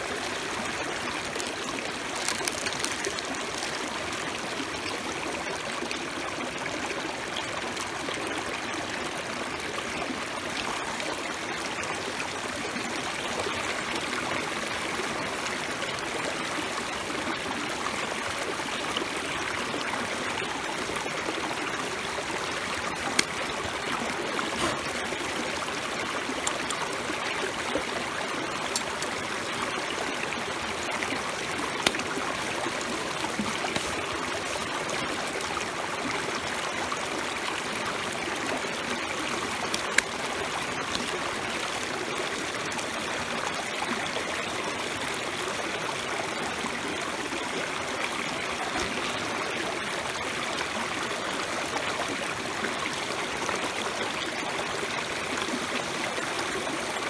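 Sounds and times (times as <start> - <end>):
food sizzling over wood fire: 0.6 - 4.4
fire popping: 0.9 - 4.3.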